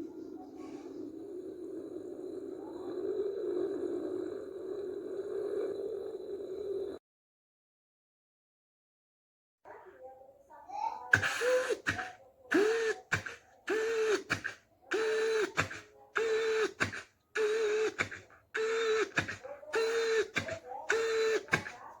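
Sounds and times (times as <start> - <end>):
mouth clicks: 11.1 - 22.0.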